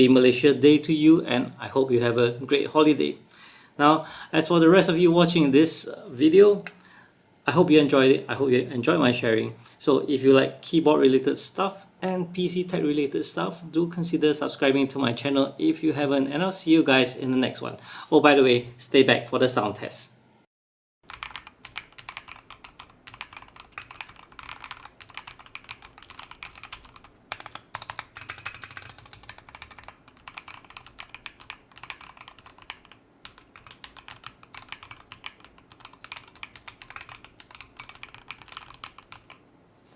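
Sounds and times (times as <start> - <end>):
mechanical keyboard typing: 21.1 - 39.4.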